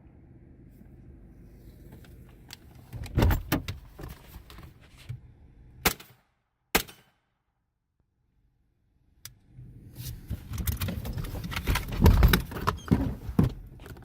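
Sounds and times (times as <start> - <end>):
car door and body thumps: 2.9 - 4.3.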